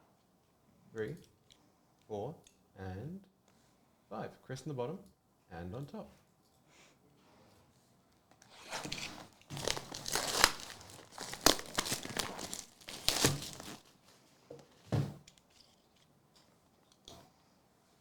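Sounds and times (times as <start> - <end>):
foil wrapper tearing and crinkling: 8.7 - 14.0.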